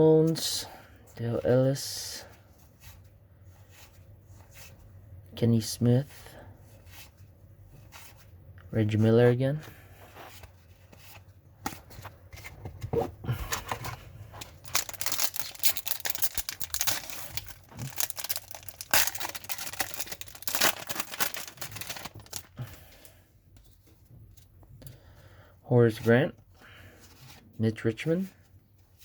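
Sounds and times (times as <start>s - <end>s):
cards shuffling: 10.3s - 22.6s
wrapper tearing and crinkling: 14.4s - 22.6s.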